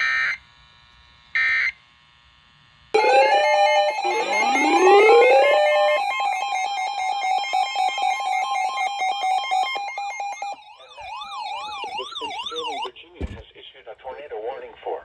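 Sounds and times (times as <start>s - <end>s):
electronic alert siren: 3.0s - 12.9s.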